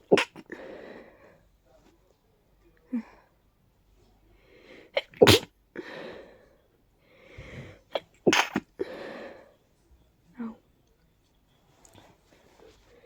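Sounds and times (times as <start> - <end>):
person sneezing: 5.0 - 5.5, 7.9 - 8.6.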